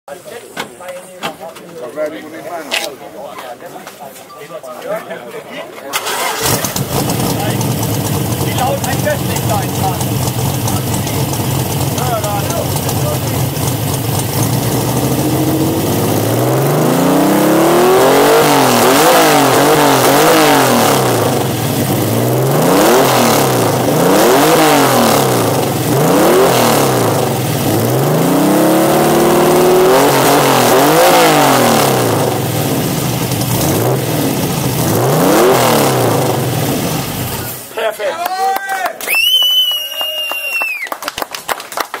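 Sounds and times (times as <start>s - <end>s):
car engine revving: 6.0s - 37.7s.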